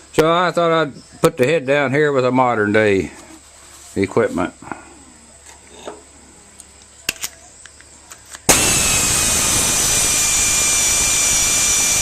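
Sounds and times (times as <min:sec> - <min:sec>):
air wrench whining: 0:08.5 - 0:12.0.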